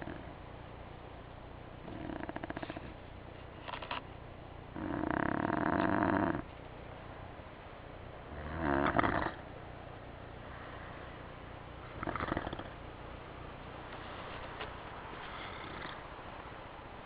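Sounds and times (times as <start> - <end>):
person snoring: 8.3 - 9.4.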